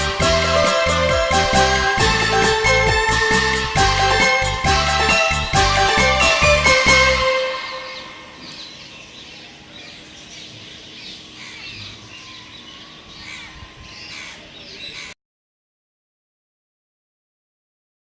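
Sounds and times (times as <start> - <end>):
music track: 0.0 - 8.6
background hiss: 0.0 - 13.2
birds chirping: 0.0 - 15.2.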